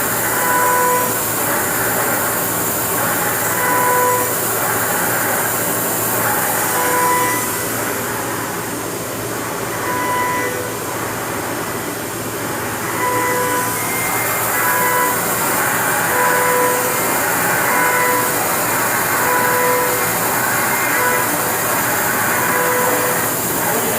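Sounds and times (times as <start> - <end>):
milling machine cutting hiss: 0.0 - 8.6, 12.4 - 23.9
short ringing tone: 6.8 - 7.6, 9.7 - 10.8, 12.9 - 15.3, 16.0 - 17.0, 19.2 - 20.2.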